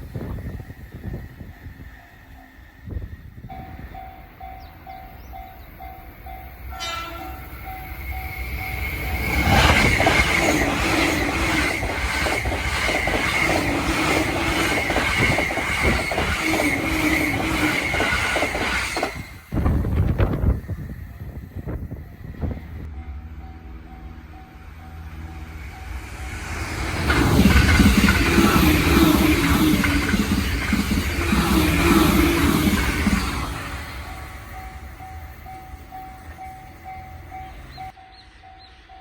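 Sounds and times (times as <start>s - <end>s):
train passing at high speed: 0.0s - 39.0s
level-crossing warning bell: 1.2s - 18.4s, 21.2s - 39.0s
train horn blast: 6.7s - 7.9s
wheels clattering over rail joints: 8.9s - 19.4s, 26.2s - 37.9s.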